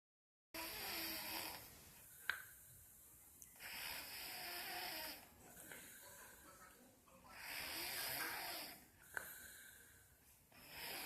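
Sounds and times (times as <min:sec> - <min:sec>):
person snoring: 0:00.6 - 0:01.6, 0:03.6 - 0:05.3, 0:07.3 - 0:08.8, 0:10.5 - 0:11.0.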